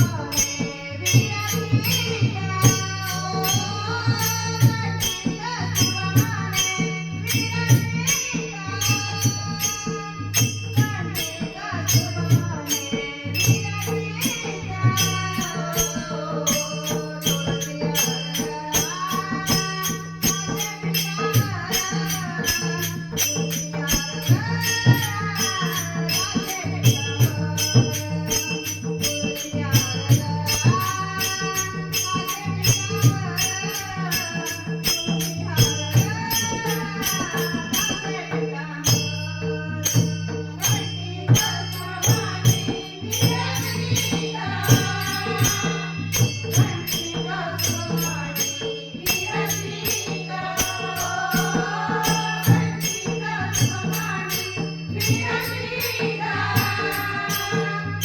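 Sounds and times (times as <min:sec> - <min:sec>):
jingling percussion: 0:00.0 - 0:58.0
woman singing: 0:00.0 - 0:58.0.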